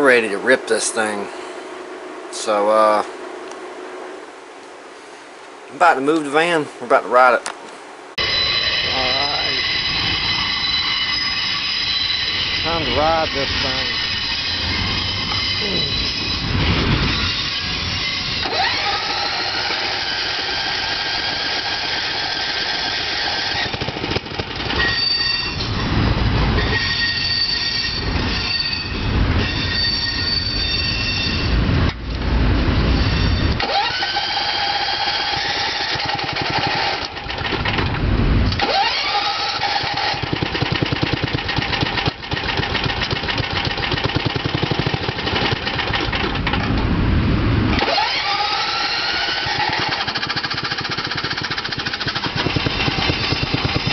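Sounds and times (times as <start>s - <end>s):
high whining tones: 8.0s - 53.9s
small engine speeding up: 18.4s - 24.9s, 33.6s - 37.8s, 38.5s - 46.3s, 47.8s - 53.9s.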